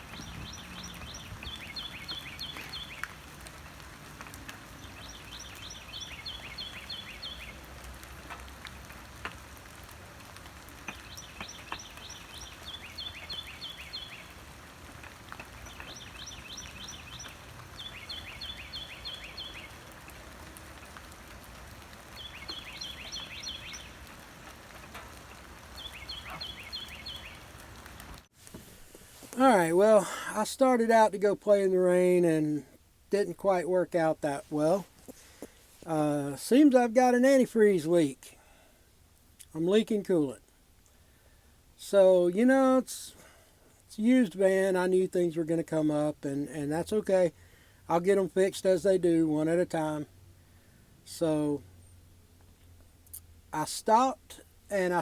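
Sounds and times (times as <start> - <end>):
songbird trilling: 0.0 - 3.1, 4.8 - 7.6, 10.9 - 14.3, 15.6 - 19.8, 22.2 - 24.0, 25.8 - 27.5
steady rain: 0.0 - 51.7, 52.3 - 55.0.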